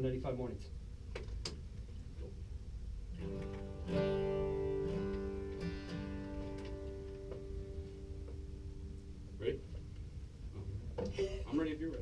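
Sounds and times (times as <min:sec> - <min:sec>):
guitar picking: 0:03.2 - 0:10.0.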